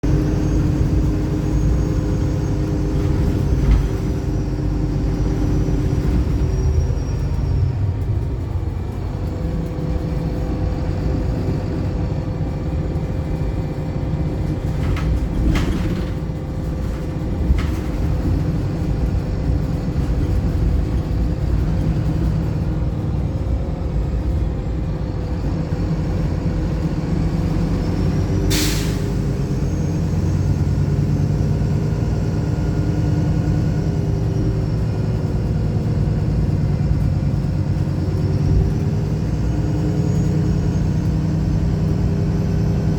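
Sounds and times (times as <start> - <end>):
bus diesel engine drone: 0.0 - 42.9
air brake hissing: 28.5 - 29.2.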